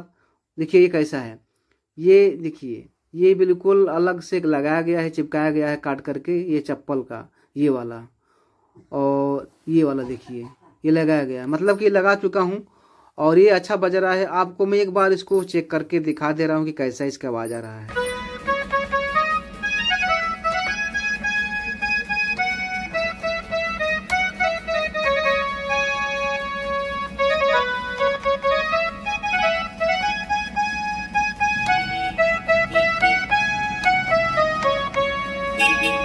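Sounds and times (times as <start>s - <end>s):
electronic keyboard melody: 17.5s - 36.0s.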